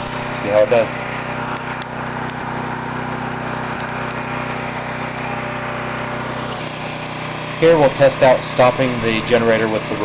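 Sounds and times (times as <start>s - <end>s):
portable generator running: 0.0s - 10.0s.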